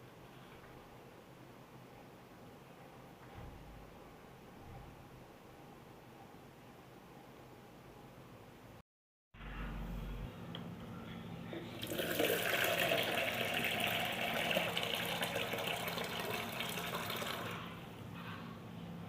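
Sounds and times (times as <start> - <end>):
water running from a tap: 11.8 - 17.7.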